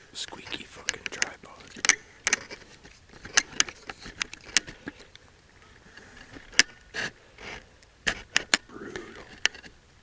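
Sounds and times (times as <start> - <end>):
tripod clicking and creaking: 0.8 - 5.3.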